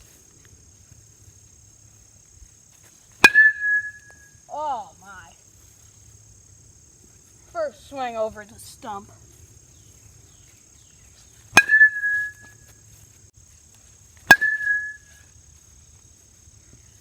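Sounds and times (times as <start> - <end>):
metal bat hitting baseball: 3.2 - 4.2, 11.6 - 12.6, 14.3 - 15.1.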